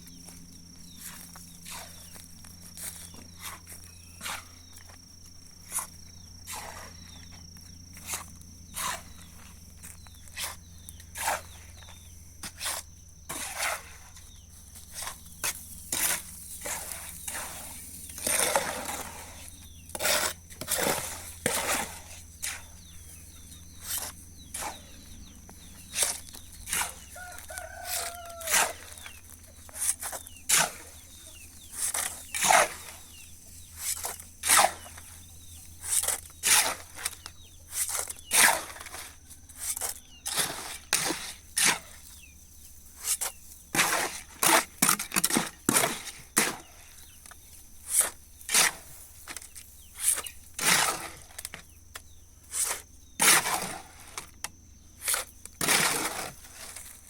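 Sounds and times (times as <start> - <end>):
chickens clucking: 21.6 - 35.7
rooster crowing: 26.8 - 29.1.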